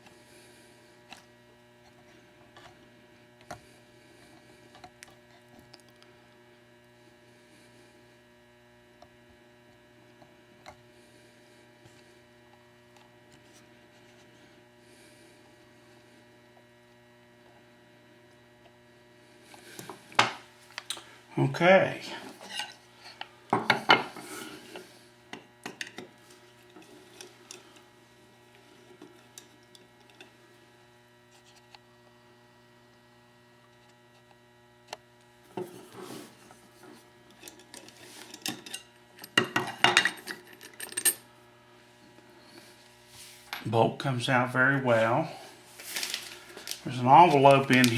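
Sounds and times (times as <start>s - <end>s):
electrical hum: 0.0s - 47.9s.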